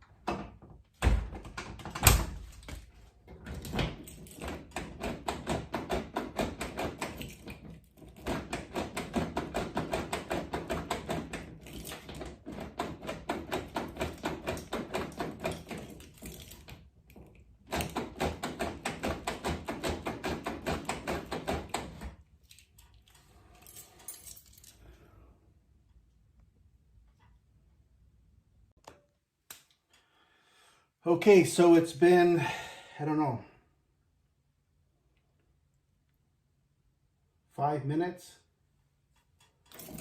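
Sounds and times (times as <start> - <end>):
key rattling in door lock: 3.4 - 24.9, 39.3 - 40.0.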